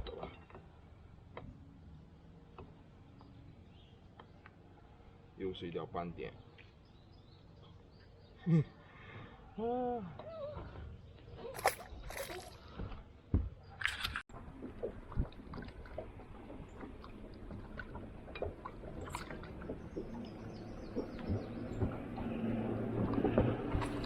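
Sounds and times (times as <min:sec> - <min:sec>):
water splashes: 0:11.4 - 0:12.7, 0:13.8 - 0:24.0.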